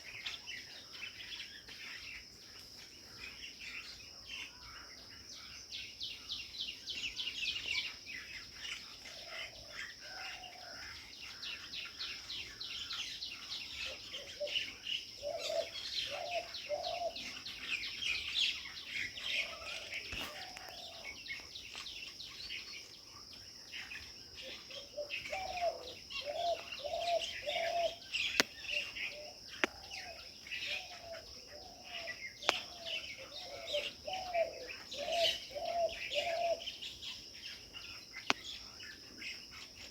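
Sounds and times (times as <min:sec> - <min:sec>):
birds chirping and twittering: 0:00.0 - 0:39.9
high insect drone: 0:00.0 - 0:39.9
low repeating bird call: 0:13.8 - 0:21.4, 0:24.5 - 0:36.8.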